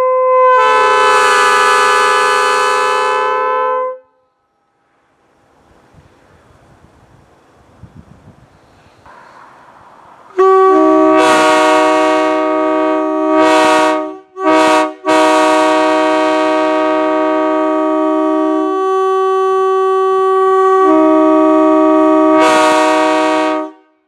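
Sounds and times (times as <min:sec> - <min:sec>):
locomotive air horn chord: 0:00.0 - 0:05.4, 0:10.3 - 0:24.0.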